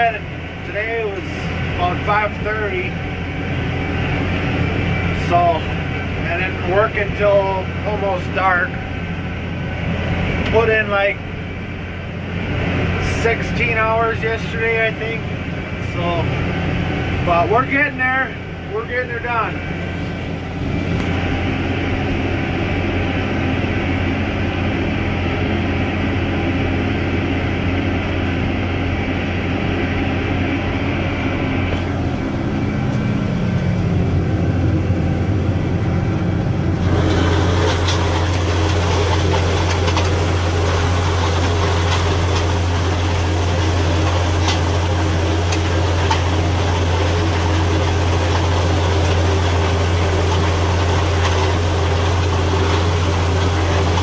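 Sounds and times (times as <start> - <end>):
tractor engine running: 0.0 - 54.0
machinery hiss and rattle: 36.8 - 54.0.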